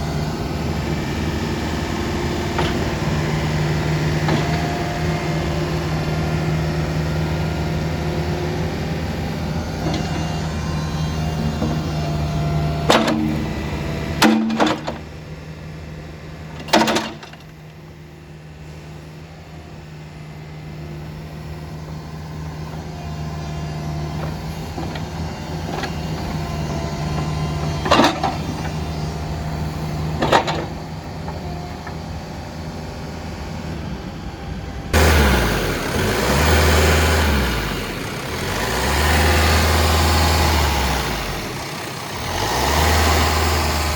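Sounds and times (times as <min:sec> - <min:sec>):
metallic knocks and clunks: 0:12.8 - 0:13.6, 0:14.2 - 0:15.1, 0:16.6 - 0:17.5, 0:30.2 - 0:30.8
diesel engine idling: 0:17.4 - 0:43.9.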